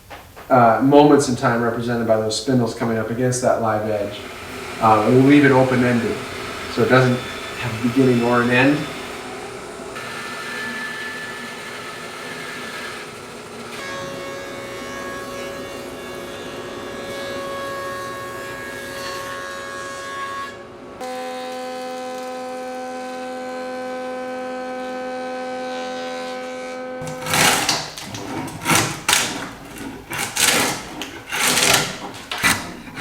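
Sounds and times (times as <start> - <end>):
tool scraping wood: 2.6 - 9.3, 10.0 - 14.2, 25.9 - 33.0
power tool running: 3.7 - 25.6, 26.4 - 33.0
lower-pitched power tool running: 4.0 - 19.7.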